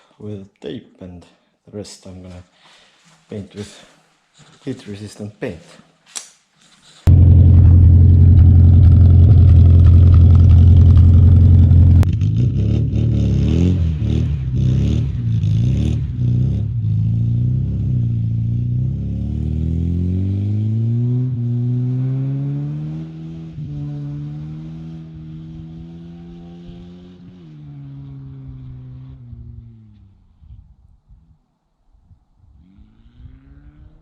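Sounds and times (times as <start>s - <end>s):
car engine running and revving: 7.1s - 30.0s
car pulling away: 7.1s - 30.0s.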